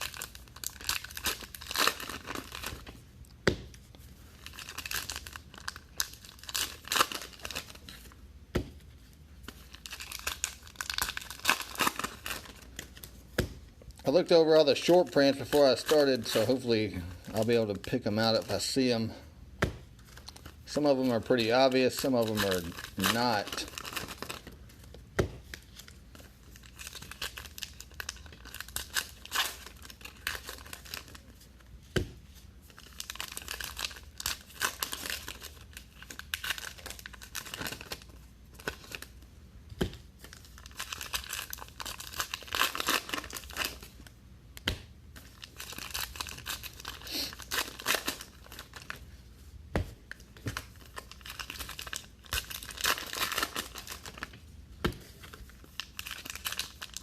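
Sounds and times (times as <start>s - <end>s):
card packs torn open: 0.0s - 2.8s, 4.4s - 8.1s, 9.5s - 13.1s, 20.1s - 24.6s, 26.6s - 31.3s, 32.7s - 39.2s, 40.2s - 44.0s, 45.2s - 49.0s, 50.6s - 54.3s, 55.3s - 57.0s
wrappers crinkling: 0.0s - 3.0s, 4.2s - 8.2s, 9.0s - 13.2s, 13.8s - 19.2s, 19.9s - 24.9s, 25.5s - 31.7s, 32.7s - 39.2s, 40.2s - 44.1s, 45.2s - 49.2s, 50.1s - 57.0s
cards clicking and rustling: 20.0s - 31.4s.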